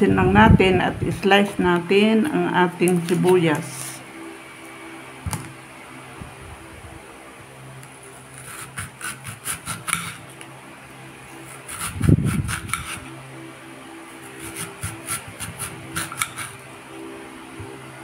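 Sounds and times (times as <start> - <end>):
low hum: 0.0 - 18.0
knife slicing on cutting board: 8.4 - 10.2, 11.7 - 13.0.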